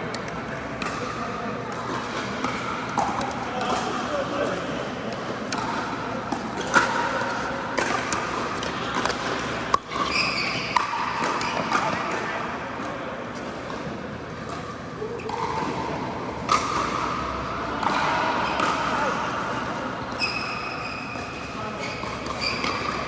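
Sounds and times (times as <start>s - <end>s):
indistinct echoing voices: 0.0s - 23.0s
ball bouncing on court: 0.1s - 12.4s, 14.5s - 23.0s
paddles hitting plastic ball: 1.7s - 12.2s.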